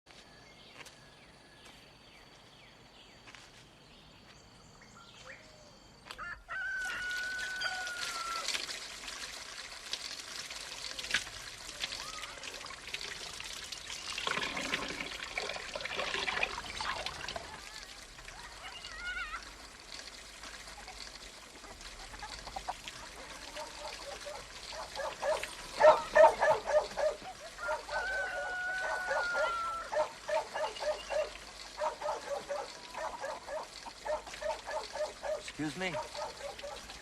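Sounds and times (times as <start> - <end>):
rooster crowing: 6.1 - 8.6, 27.5 - 30.1
water pouring and trickling: 6.8 - 37.0
chickens calling: 20.7 - 37.0.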